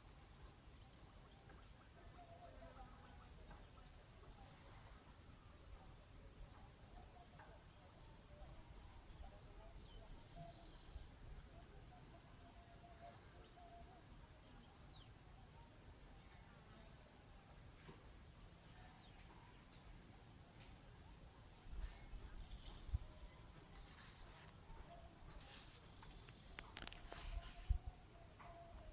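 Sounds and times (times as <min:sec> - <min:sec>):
insects shrilling: 0:21.8 - 0:28.9.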